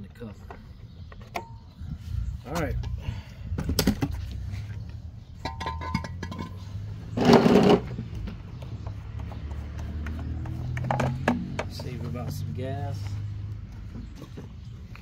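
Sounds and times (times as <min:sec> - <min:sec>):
clatter of parts being handled: 0:05.4 - 0:07.8.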